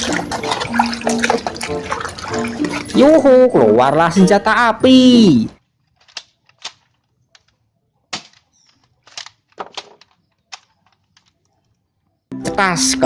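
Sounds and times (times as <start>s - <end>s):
plastic toy gun clicks: 5.9s - 11.4s.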